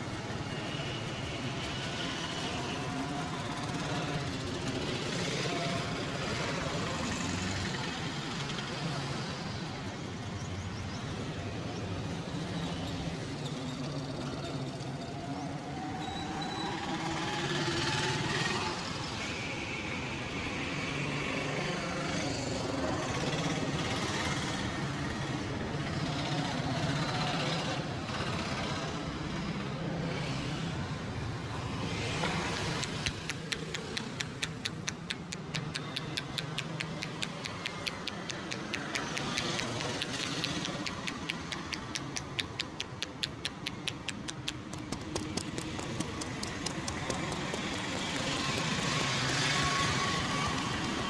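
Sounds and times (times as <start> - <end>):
vehicles passing: 0.0 - 51.0
rapid taps: 32.3 - 49.8.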